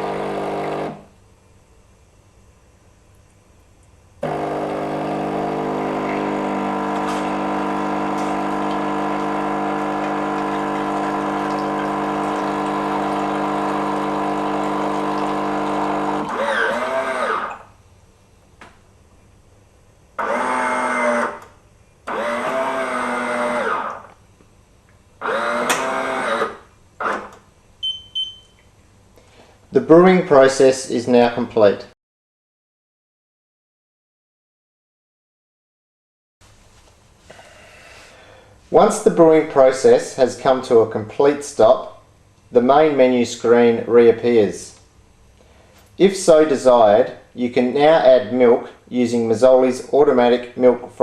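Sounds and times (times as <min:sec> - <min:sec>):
coffee grinder running: 0:00.0 - 0:01.1, 0:04.2 - 0:17.7, 0:20.2 - 0:21.4, 0:22.1 - 0:24.1, 0:25.2 - 0:26.6
motor and pump bursts: 0:00.0 - 0:01.1, 0:04.2 - 0:17.8, 0:20.2 - 0:21.5, 0:22.1 - 0:24.1, 0:25.2 - 0:27.4
short high beep: 0:27.8 - 0:28.6.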